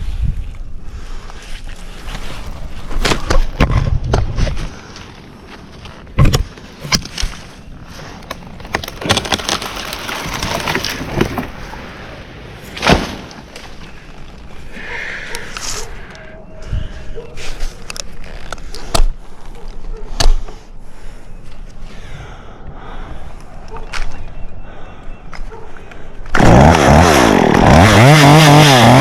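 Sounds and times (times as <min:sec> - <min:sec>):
branches rustling and crackling: 0:00.0 - 0:22.1
branches snapping: 0:01.7 - 0:04.6, 0:06.2 - 0:12.0, 0:12.6 - 0:14.5, 0:26.2 - 0:29.0.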